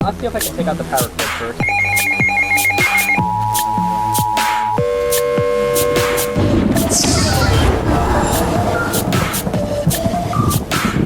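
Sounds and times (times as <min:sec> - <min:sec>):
electronic music with drum beat: 0:00.0 - 0:11.0
two-note electronic tone: 0:01.6 - 0:06.4.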